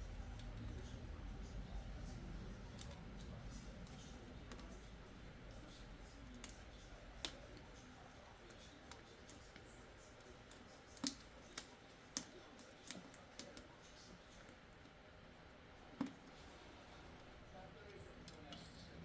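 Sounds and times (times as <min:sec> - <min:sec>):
small clicks and taps: 0:00.2 - 0:16.5, 0:17.1 - 0:19.0.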